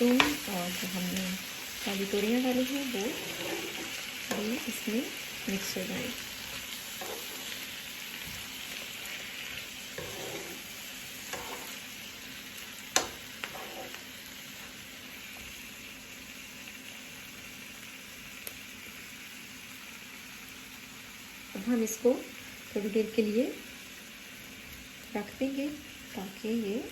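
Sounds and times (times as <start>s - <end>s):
spoon scraping pan: 0.0s - 1.0s, 1.6s - 7.7s, 8.7s - 11.9s, 13.0s - 14.7s
food sizzling in oil: 0.0s - 26.9s.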